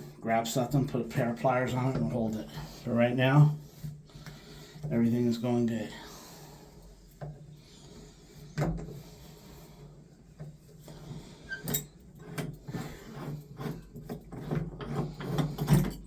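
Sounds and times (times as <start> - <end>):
hand tools clicking and knocking: 13.6 - 16.0.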